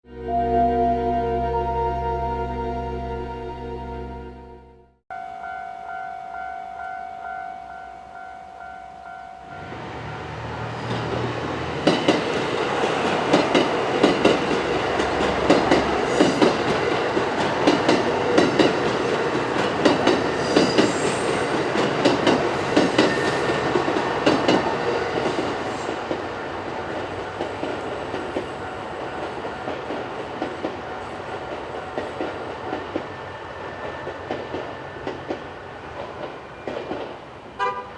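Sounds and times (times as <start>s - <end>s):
level crossing warning bell: 0.1s - 10.4s
train wheels clacking on rail joints: 10.8s - 37.9s.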